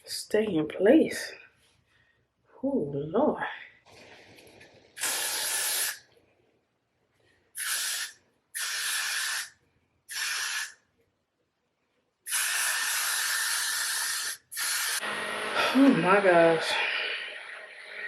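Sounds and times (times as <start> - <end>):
aerosol spray hissing: 5.0 - 6.0, 7.6 - 10.8, 12.3 - 15.0.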